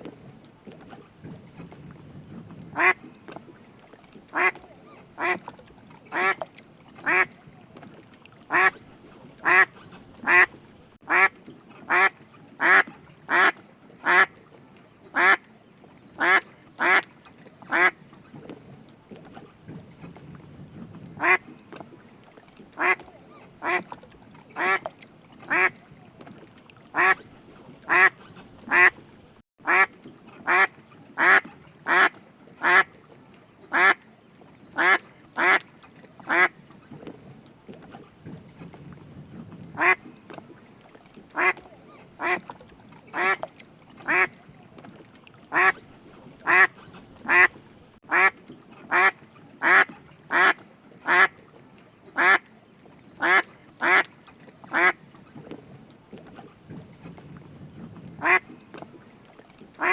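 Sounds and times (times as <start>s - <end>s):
duck quacking: 2.7s - 3.0s, 4.3s - 4.6s, 6.1s - 6.4s, 7.1s - 7.3s, 8.5s - 8.8s, 9.4s - 10.5s, 11.1s - 11.3s, 11.9s - 14.3s, 15.2s - 15.4s, 16.2s - 17.0s, 17.7s - 17.9s, 21.2s - 21.4s, 22.8s - 23.0s, 23.6s - 23.8s, 24.6s - 24.8s, 27.0s - 27.2s, 27.9s - 29.0s, 29.6s - 32.9s, 34.8s - 35.6s, 39.8s - 40.0s, 41.4s - 41.6s, 42.2s - 42.4s, 45.5s - 45.8s, 46.4s - 47.5s, 48.1s - 48.3s, 48.9s - 51.3s, 53.2s - 54.1s, 58.2s - 58.4s.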